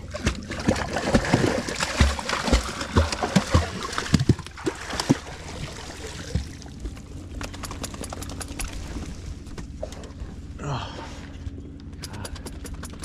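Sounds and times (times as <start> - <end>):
water splashing and sloshing: 0.0 - 11.6
small clicks: 11.8 - 13.0.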